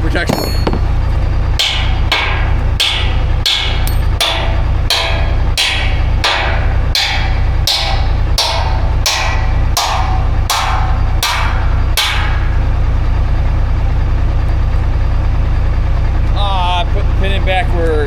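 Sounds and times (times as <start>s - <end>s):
engine running: 0.0s - 18.0s
hammer blows on metal: 0.3s - 13.8s.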